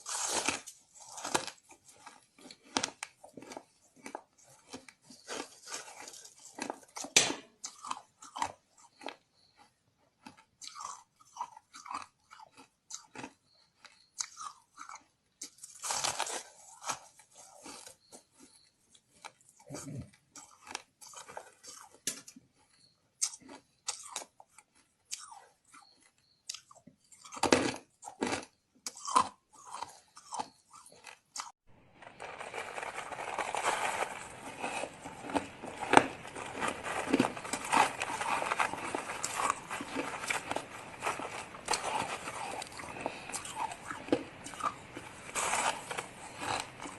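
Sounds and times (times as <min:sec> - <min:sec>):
ice being crunched: 0:00.0 - 0:01.6, 0:31.8 - 0:46.9.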